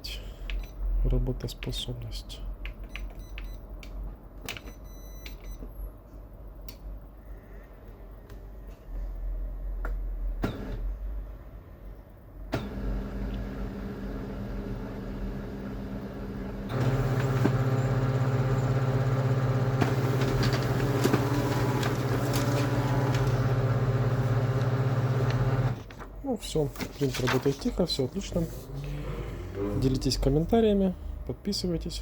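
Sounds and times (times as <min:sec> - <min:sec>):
printer humming: 0:12.6 - 0:26.0
printer drive mechanism running: 0:16.4 - 0:25.9.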